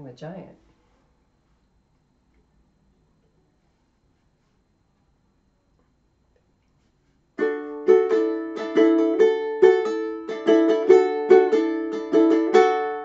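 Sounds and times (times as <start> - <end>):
ukulele strumming chords: 7.4 - 13.0.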